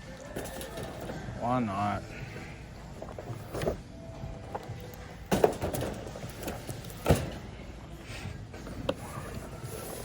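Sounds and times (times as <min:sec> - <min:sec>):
items clattering into shopping cart: 0:00.3 - 0:01.2, 0:05.3 - 0:07.5.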